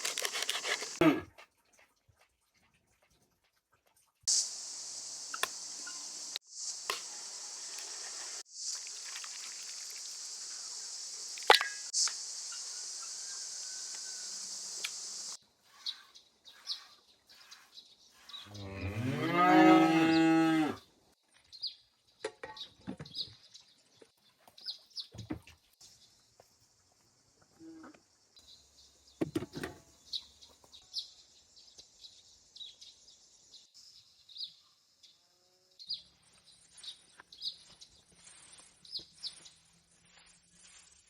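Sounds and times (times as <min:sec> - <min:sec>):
cow mooing: 0:01.0 - 0:01.3, 0:18.6 - 0:20.8
steady high hiss: 0:04.3 - 0:15.4.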